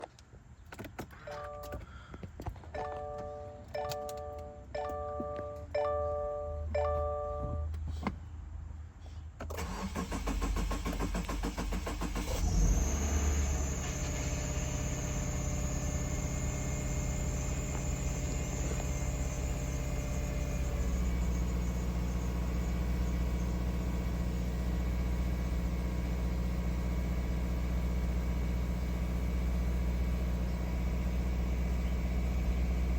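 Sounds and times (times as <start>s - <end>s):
starter motor cranking: 9.6s - 19.5s
car engine idling: 9.6s - 32.9s.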